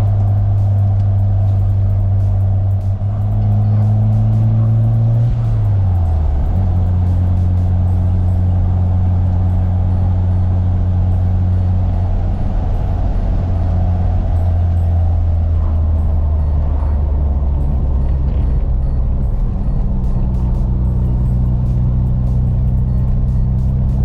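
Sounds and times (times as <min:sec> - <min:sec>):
rotary engine droning: 0:00.0 - 0:24.0.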